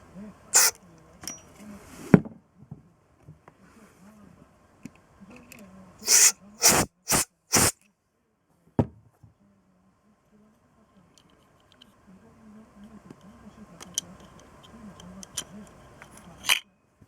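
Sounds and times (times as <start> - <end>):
pressurised gas hissing blasts: 0.6 - 0.8, 6.0 - 7.7.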